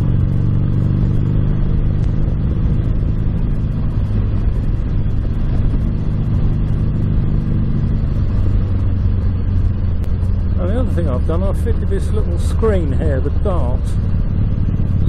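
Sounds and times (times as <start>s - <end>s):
wind on microphone: 0.0s - 11.2s
motorcycle engine running: 0.0s - 15.0s.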